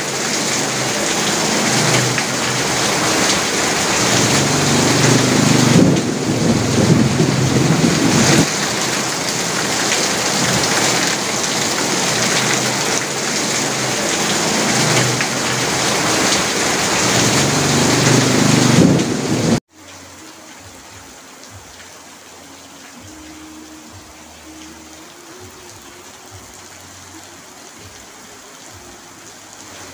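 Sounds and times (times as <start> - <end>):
heavy rain on a sheet roof: 0.0 - 29.9
low rumbling: 3.8 - 8.5.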